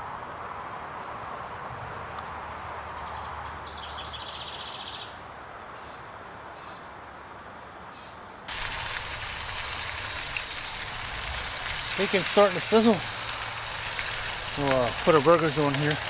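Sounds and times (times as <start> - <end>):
bacon sizzling in a pan: 8.5 - 16.0.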